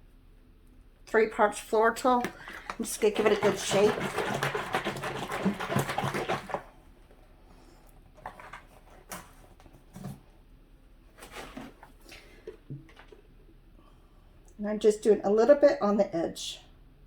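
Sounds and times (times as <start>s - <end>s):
paint container shaken hard: 2.2s - 6.8s.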